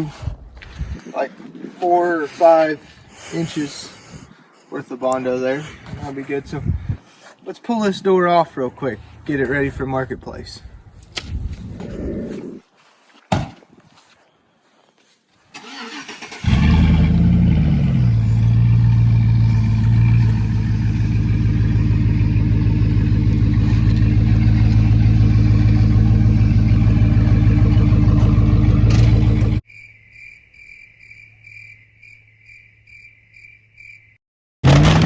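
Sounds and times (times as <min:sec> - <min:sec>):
engine cranking and idling: 0:15.6 - 0:29.6.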